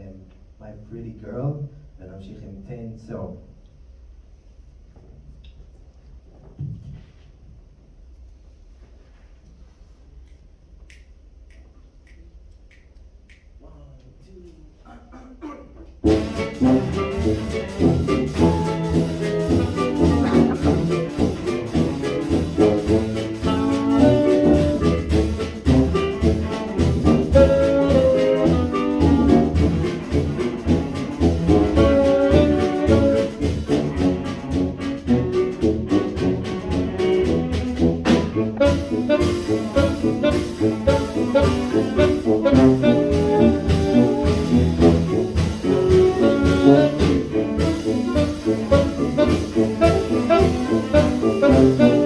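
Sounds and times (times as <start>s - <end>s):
jazz band playing: 16.0s - 52.0s
saxophone melody: 16.0s - 52.0s.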